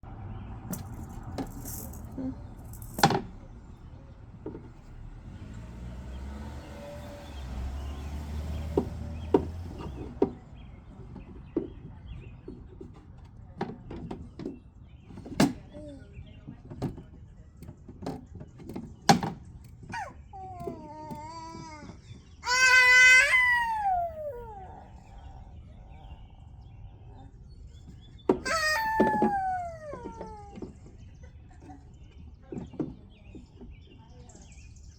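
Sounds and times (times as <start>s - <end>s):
toy pieces clicking and knocking: 0.7s - 3.1s.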